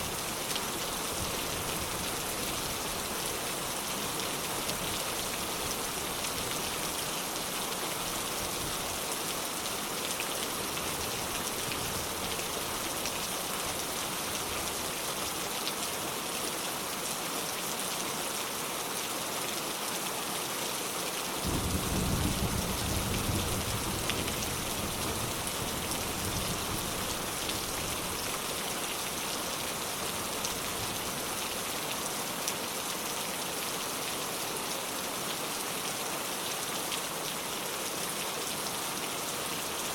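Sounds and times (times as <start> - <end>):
steady rain: 0.0 - 39.9
distant thunder rumble: 21.5 - 24.4.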